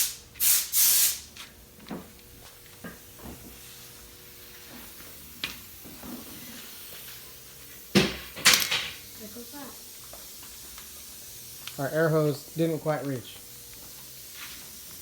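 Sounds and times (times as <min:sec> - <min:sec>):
compressed air hissing: 0:00.0 - 0:01.3, 0:04.6 - 0:15.0.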